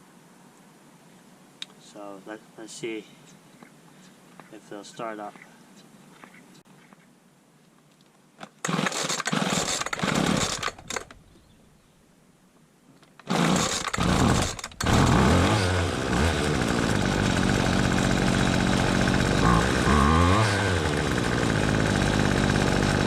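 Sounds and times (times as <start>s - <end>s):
lawnmower engine starting and running: 8.6s - 11.2s, 13.2s - 23.0s.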